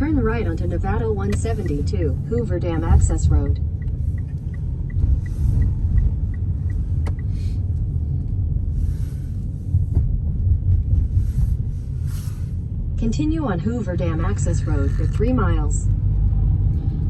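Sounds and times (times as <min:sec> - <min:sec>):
turn signal ticking: 0:00.0 - 0:12.2, 0:13.0 - 0:16.9
car road and engine rumble: 0:00.0 - 0:17.0.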